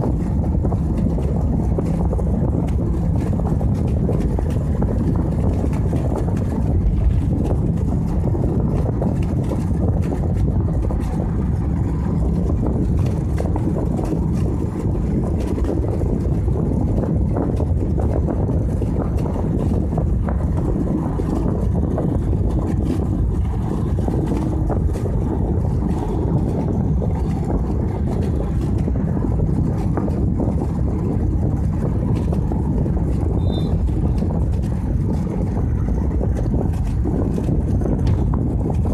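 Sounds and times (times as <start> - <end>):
vehicle rumble on the road: 0.0 - 38.9.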